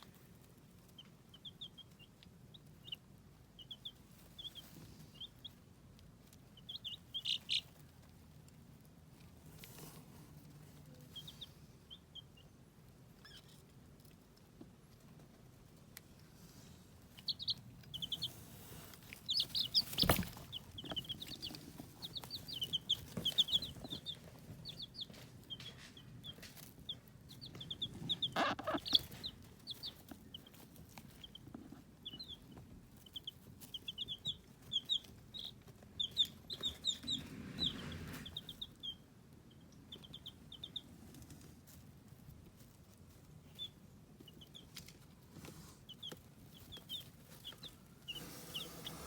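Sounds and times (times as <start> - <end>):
chicks peeping: 0.0 - 49.0.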